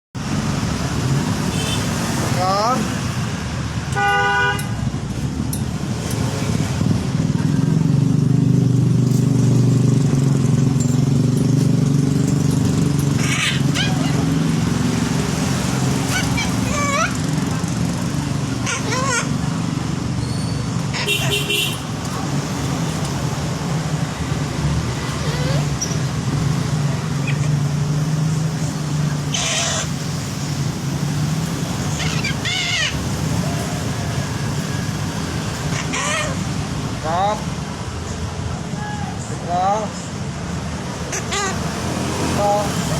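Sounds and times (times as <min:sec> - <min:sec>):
cockatoo squawk: 0:13.1 - 0:14.5, 0:15.9 - 0:17.5, 0:18.5 - 0:19.5, 0:20.9 - 0:21.7, 0:29.3 - 0:30.0, 0:31.9 - 0:33.2, 0:35.5 - 0:36.6, 0:41.0 - 0:41.7.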